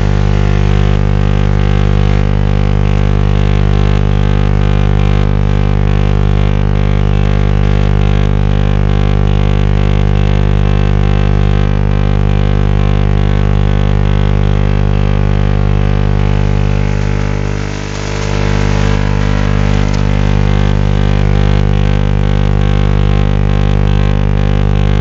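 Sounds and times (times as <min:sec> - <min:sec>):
radio hiss: 0:00.0 - 0:02.4, 0:14.8 - 0:23.0
buzzing radio tone: 0:00.0 - 0:03.3, 0:12.7 - 0:25.0.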